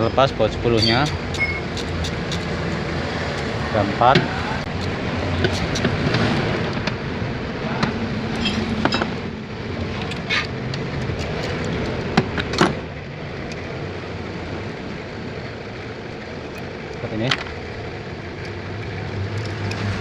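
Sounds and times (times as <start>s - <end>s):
wrench clicking on bolts: 0.0s - 3.6s
steady background rumble: 0.0s - 20.0s.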